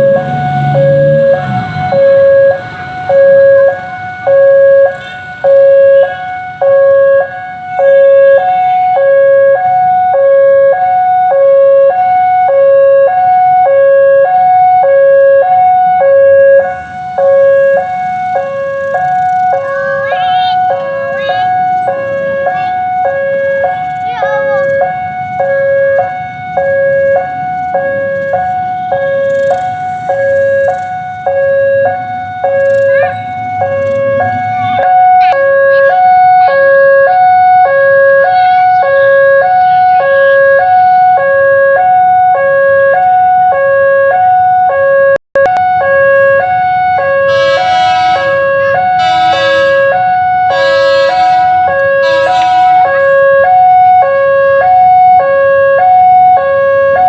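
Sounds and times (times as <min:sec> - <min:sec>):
level crossing alarm two tones: 0:00.0 - 0:56.5
short horn blasts: 0:47.2 - 0:53.7.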